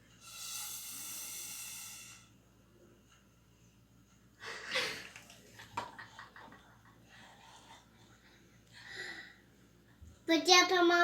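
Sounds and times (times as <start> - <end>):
breath blown through a straw: 0.2 - 2.4.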